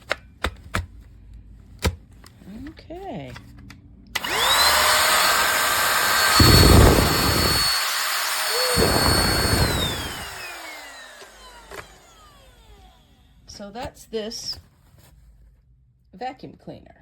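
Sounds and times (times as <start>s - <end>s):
handheld vacuum cleaner whine: 4.2s - 13.3s
low rumbling of air: 6.3s - 7.6s, 8.5s - 10.5s.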